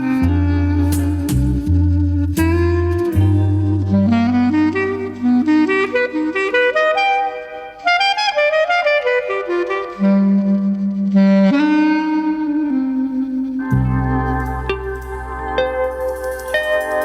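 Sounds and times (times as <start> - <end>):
bass note: 0.0 - 5.6, 13.6 - 17.0
saxophone melody: 0.0 - 17.0.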